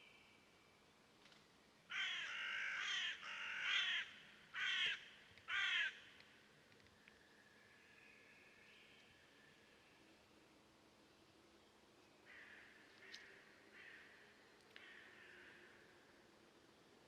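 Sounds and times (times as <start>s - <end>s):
faint steady bird tone: 0.0s - 17.0s
crow cawing: 1.9s - 6.1s, 12.3s - 14.2s, 14.8s - 15.8s.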